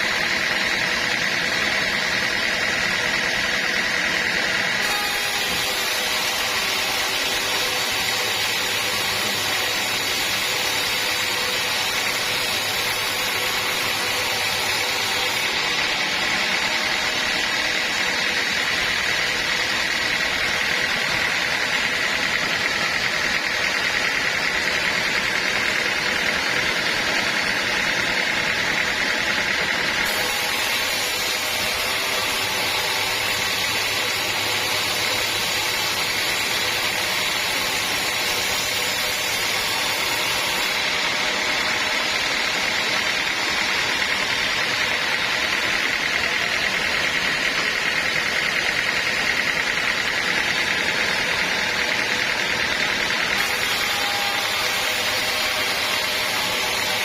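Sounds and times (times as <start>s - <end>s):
high machine whine: 0.0s - 57.0s
sawmill saw running: 0.0s - 57.0s.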